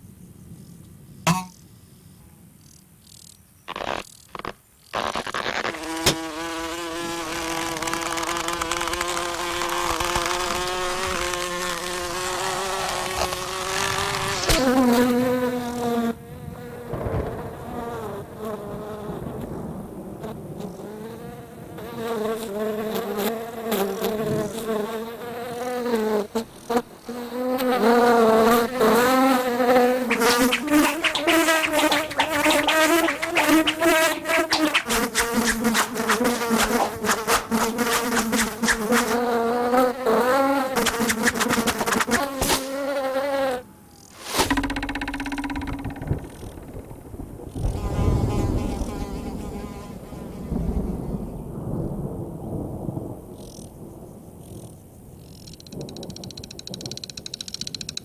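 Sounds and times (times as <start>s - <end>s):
insect wing buzz: 2.6s - 19.7s, 20.6s - 51.4s.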